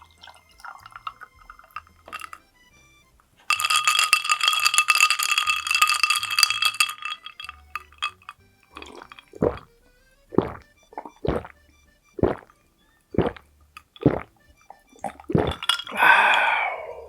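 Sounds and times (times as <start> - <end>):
background music: 0.0 - 17.0
soft plops: 8.7 - 12.6, 13.2 - 16.0.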